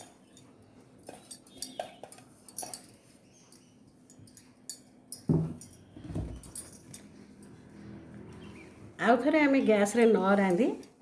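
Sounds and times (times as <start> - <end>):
dishes clinking: 0.0 - 7.1.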